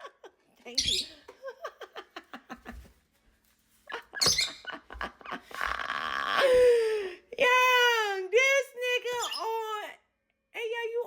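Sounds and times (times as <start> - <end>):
lovebird chirping: 0.7 - 1.2, 4.2 - 4.7, 9.2 - 9.6.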